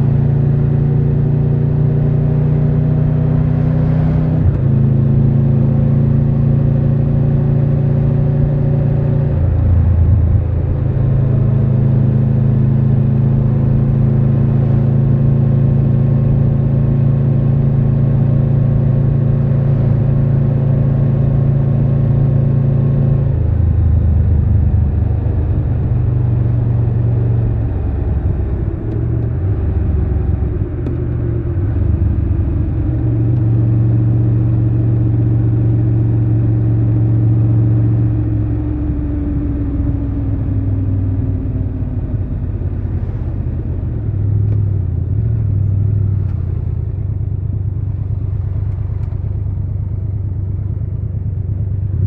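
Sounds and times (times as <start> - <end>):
motorcycle engine running: 36.4 - 52.0.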